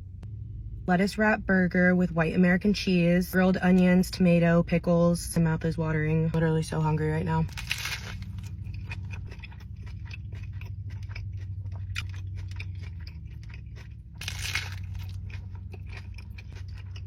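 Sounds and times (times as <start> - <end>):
steady low hum: 0.0 - 17.0
crunching and chewing burger: 7.4 - 17.0.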